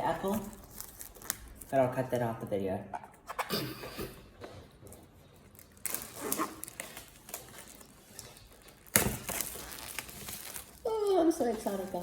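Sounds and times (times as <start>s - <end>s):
packaging rustling: 5.4s - 12.0s.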